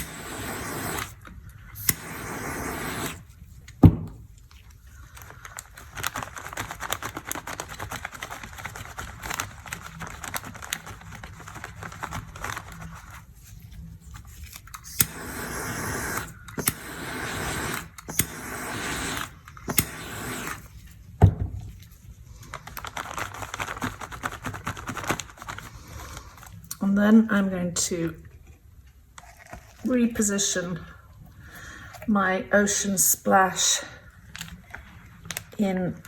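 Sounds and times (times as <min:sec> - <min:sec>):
short bursts of hiss: 0:00.0 - 0:01.2, 0:01.8 - 0:03.3, 0:14.9 - 0:20.7.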